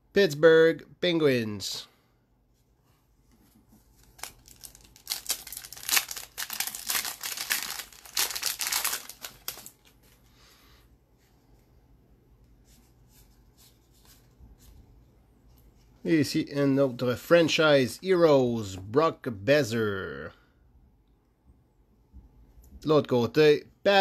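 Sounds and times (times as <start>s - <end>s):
card pack wrapper crinkling: 3.9s - 10.2s.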